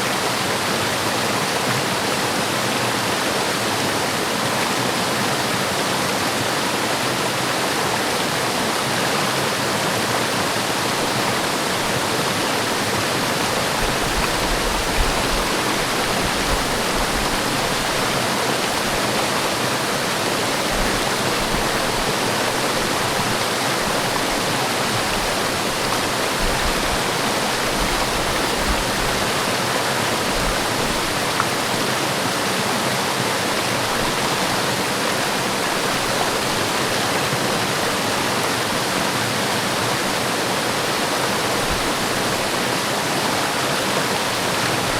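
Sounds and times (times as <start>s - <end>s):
waterfall pouring: 7.8s - 44.9s.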